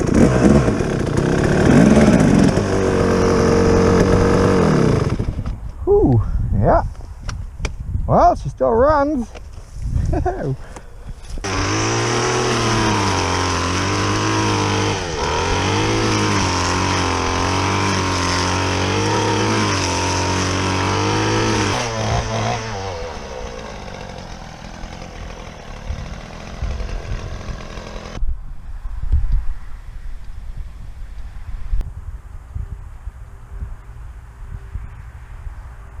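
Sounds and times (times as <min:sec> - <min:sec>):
engine running: 0:00.0 - 0:05.4, 0:11.4 - 0:28.2.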